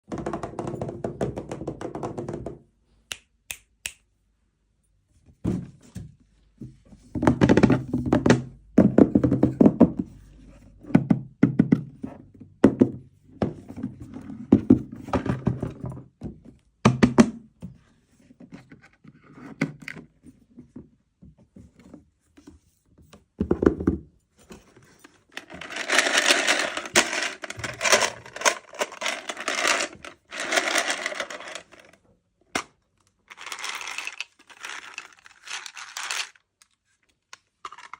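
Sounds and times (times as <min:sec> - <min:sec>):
hands handling plastic packaging: 0:25.2 - 0:32.0, 0:32.6 - 0:37.9
packaging rustling: 0:25.4 - 0:31.9, 0:33.3 - 0:36.4.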